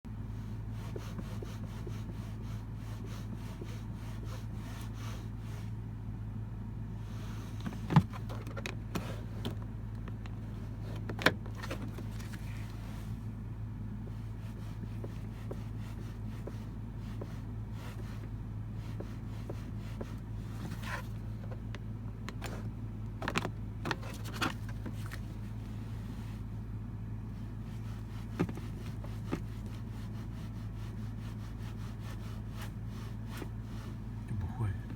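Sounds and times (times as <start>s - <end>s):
steady low hum: 0.1s - 34.9s
seatbelt webbing rubbing: 0.4s - 5.7s, 14.2s - 26.5s, 27.4s - 34.2s.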